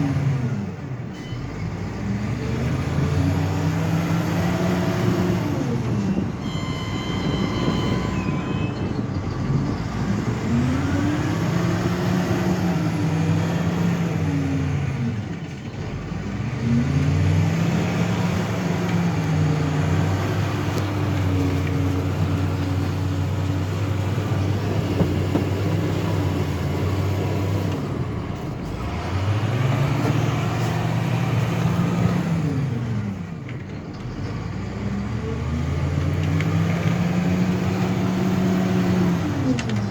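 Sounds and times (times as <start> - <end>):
truck engine revving: 0.0 - 39.9
brief high tone: 6.4 - 9.1.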